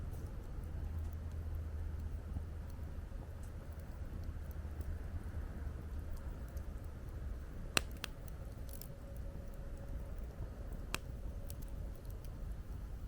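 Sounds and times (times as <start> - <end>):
low rumble of wind: 0.0 - 13.0
wood fire crackling: 0.0 - 13.0
burning wood popping: 6.1 - 12.5.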